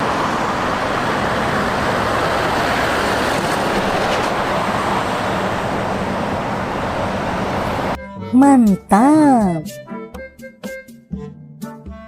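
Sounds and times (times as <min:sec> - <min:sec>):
rumbling vehicle noise: 0:00.0 - 0:08.0.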